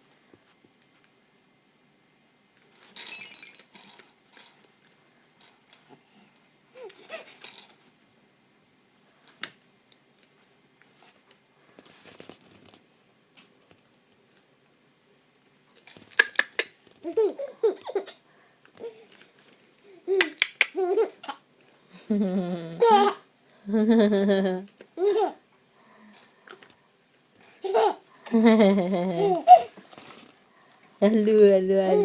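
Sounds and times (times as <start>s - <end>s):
baby laughing: 6.8s - 7.4s, 16.2s - 18.2s, 20.0s - 21.4s, 22.7s - 23.2s, 24.6s - 25.4s, 27.6s - 29.8s.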